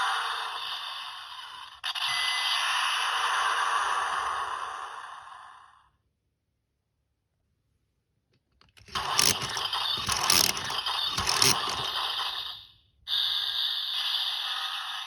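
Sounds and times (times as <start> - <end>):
plastic clicks of toy: 8.6 - 12.0
toy electronic sound effect: 8.8 - 14.9.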